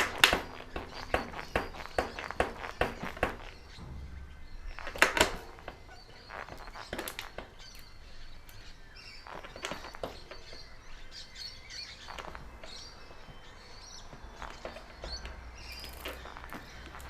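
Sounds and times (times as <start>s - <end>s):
bike suspension knocking: 0.0s - 8.6s, 9.3s - 10.8s, 12.1s - 17.0s.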